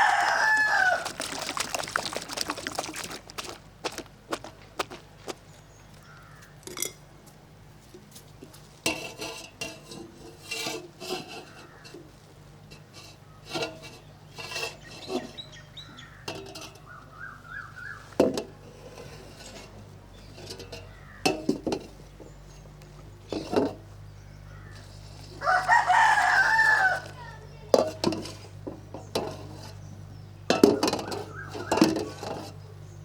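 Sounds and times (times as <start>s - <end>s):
chickens calling: 0.0s - 5.0s, 24.4s - 27.6s, 31.0s - 32.8s
clattering dishes or utensils: 30.5s - 32.6s.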